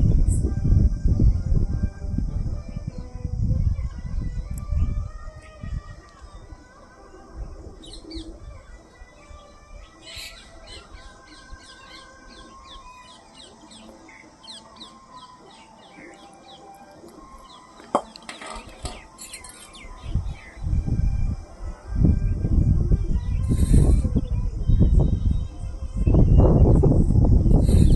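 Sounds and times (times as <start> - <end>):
small birds chirping: 3.8 - 20.9, 23.2 - 27.9.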